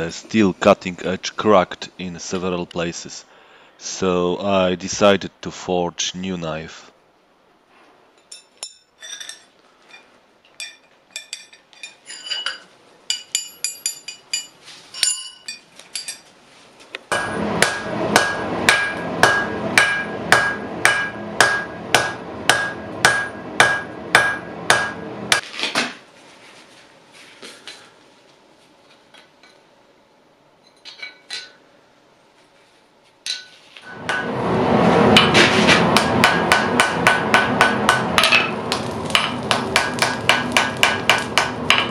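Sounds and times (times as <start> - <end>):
hammer blows on steel anvil: 17.1 - 25.4, 33.4 - 34.4, 35.2 - 41.9
steady rushing noise: 33.8 - 41.8.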